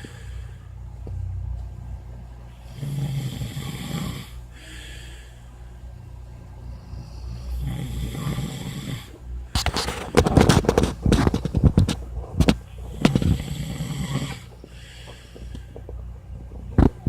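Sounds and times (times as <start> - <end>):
person snoring: 2.6 - 5.0, 6.8 - 9.2, 12.8 - 15.1.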